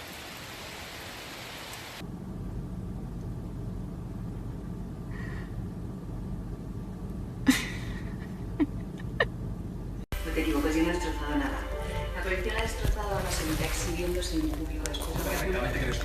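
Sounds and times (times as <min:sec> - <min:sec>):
hiss of falling water: 0:00.0 - 0:02.0
low steady rumble: 0:02.0 - 0:16.0.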